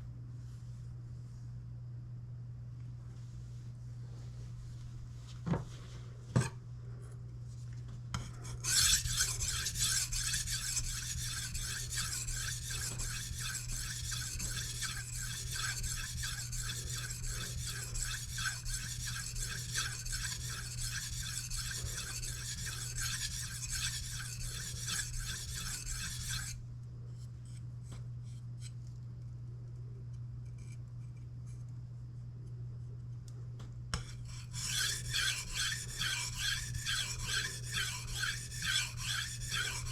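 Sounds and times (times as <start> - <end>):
steady low hum: 0.0 - 39.9
knife strokes on sharpening stone: 8.2 - 26.6, 34.0 - 39.9.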